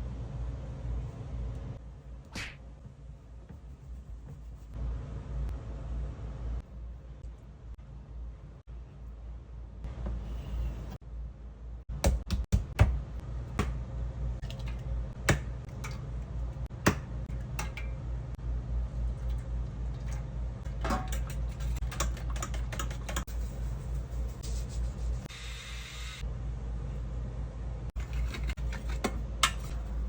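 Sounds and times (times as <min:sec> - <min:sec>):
low steady hum: 0:00.0 - 0:30.0
kitchen clicks and taps: 0:16.9 - 0:17.9, 0:28.4 - 0:29.8.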